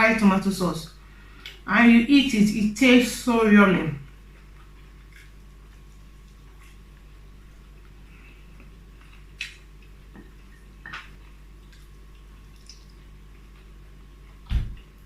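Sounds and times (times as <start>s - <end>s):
steady low hum: 0.0s - 15.0s
wet chewing: 4.1s - 14.9s.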